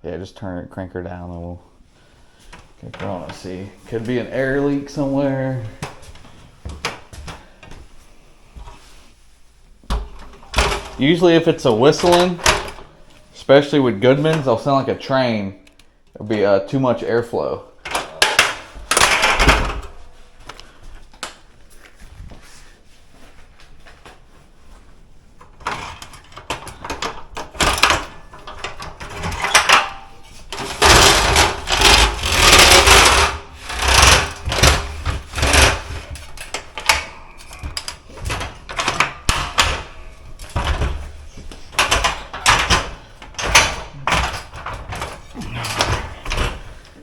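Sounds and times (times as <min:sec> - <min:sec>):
rustling of handled things: 0:01.8 - 0:47.0
objects knocking and clattering: 0:09.9 - 0:11.0, 0:17.8 - 0:20.1, 0:25.4 - 0:47.0.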